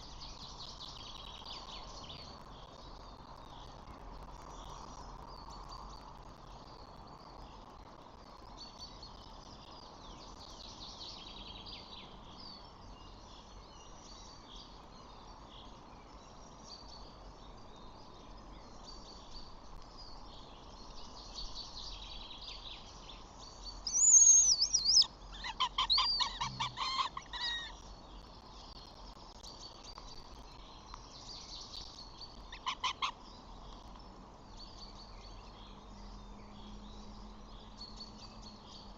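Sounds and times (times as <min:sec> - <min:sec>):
songbirds chirping: 0:00.0 - 0:38.9
bird whistle and chatter: 0:23.9 - 0:27.7.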